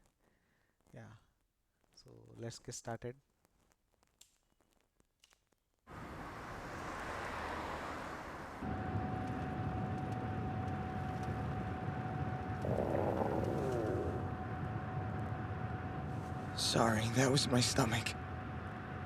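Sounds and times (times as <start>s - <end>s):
stomach growling: 12.6s - 14.4s
car drone from inside: 12.6s - 15.4s.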